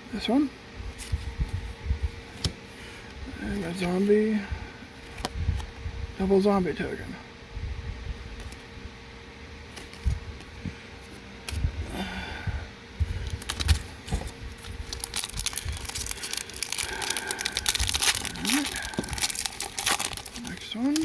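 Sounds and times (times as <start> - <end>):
foil wrapper crinkling and tearing: 13.2 - 21.0.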